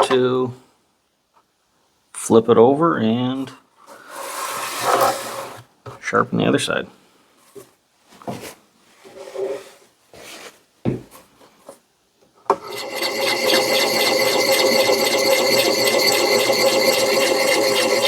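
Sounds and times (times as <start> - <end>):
diamond hone rasping on axe: 12.5 - 18.0.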